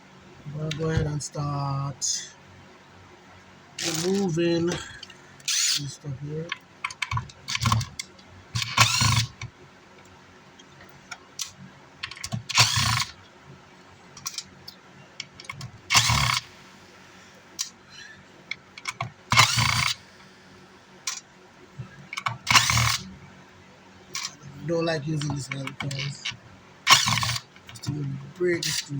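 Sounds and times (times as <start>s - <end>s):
power screwdriver whirring: 3.8s - 4.2s, 8.6s - 9.4s, 12.5s - 13.2s, 15.9s - 16.5s, 19.3s - 20.0s, 22.5s - 23.0s, 26.9s - 27.9s
small clicks and handling noise: 3.8s - 13.4s, 14.1s - 16.4s, 18.4s - 20.3s, 21.0s - 23.0s, 24.1s - 24.4s, 25.2s - 28.9s.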